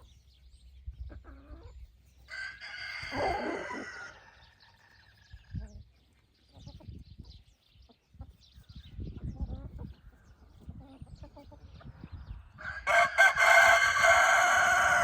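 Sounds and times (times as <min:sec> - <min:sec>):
hens clucking: 0:00.9 - 0:15.0
rooster crowing: 0:02.3 - 0:04.4, 0:12.6 - 0:15.0.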